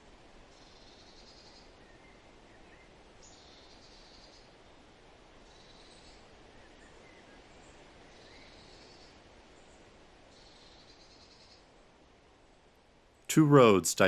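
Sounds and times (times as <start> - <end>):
steady outdoor hiss: 0.0 - 14.0
faint bird chirp: 0.5 - 4.6, 5.5 - 11.8.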